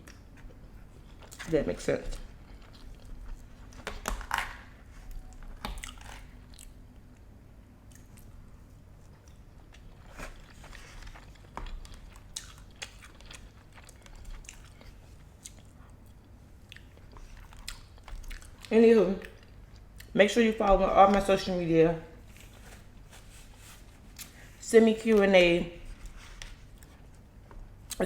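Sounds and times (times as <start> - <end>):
person chewing food: 0.0 - 1.4, 2.1 - 20.2, 25.9 - 28.0.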